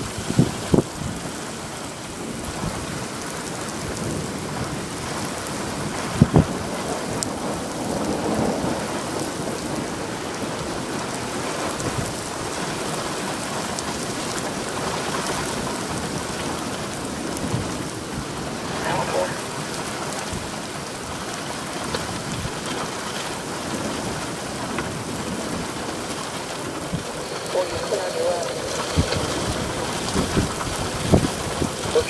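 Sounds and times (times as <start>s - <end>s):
rain falling: 0.0s - 32.0s
thunder rumbling: 15.4s - 32.0s.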